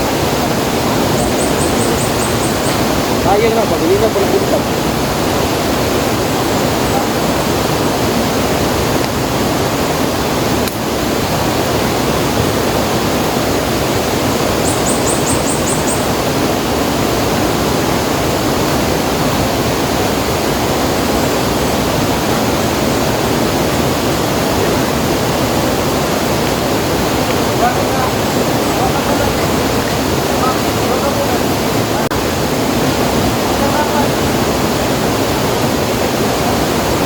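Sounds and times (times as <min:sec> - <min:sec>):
river water rushing: 0:00.0 - 0:37.0
high chirps: 0:00.8 - 0:04.1, 0:14.3 - 0:16.2.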